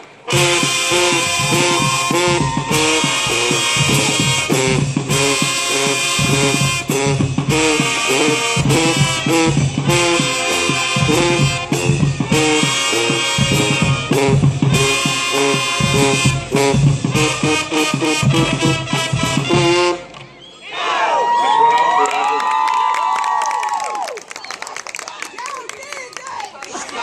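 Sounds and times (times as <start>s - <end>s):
band with brass and saxophones: 0.0s - 21.4s
steady drum beat: 0.3s - 20.0s.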